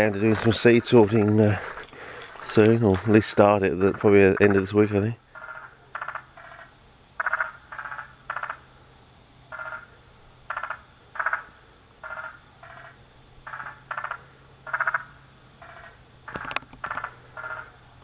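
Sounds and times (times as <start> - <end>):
frogs calling in trills: 3.4 - 18.0.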